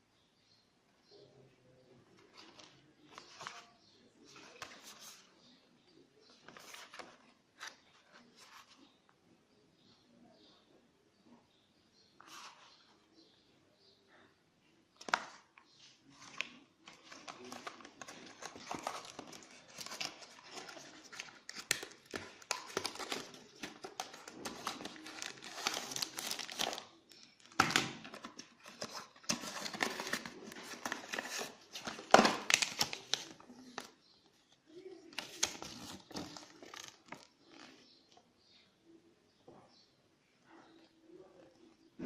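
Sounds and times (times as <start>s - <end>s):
packaging crinkling: 16.9s - 33.9s.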